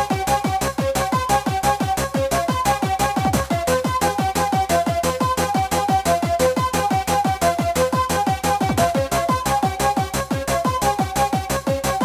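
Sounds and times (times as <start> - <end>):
fast kick drum: 0.0 - 12.0
repeating synth melody: 8.7 - 9.3.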